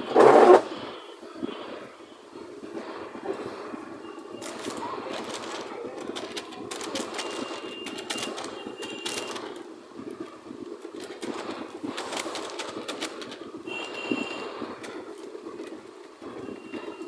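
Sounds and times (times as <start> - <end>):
mechanical clicking and rattling: 4.4 - 9.7, 10.8 - 15.0.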